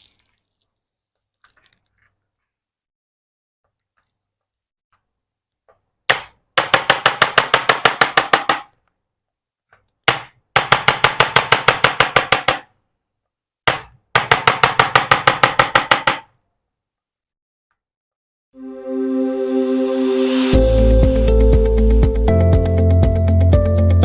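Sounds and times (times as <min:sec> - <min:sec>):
background music: 0:18.6 - 0:24.0.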